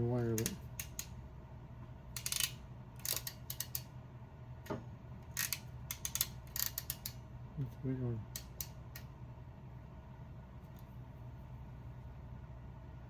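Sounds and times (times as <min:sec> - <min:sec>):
wire crimper ratchet clicking: 0:00.3 - 0:01.2, 0:02.2 - 0:03.9, 0:05.2 - 0:07.2, 0:08.3 - 0:09.1.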